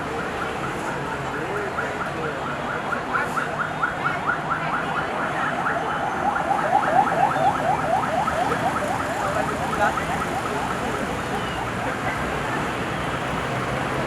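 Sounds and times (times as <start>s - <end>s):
road traffic noise: 0.0s - 14.0s
vehicle alarm chirping: 5.2s - 11.8s.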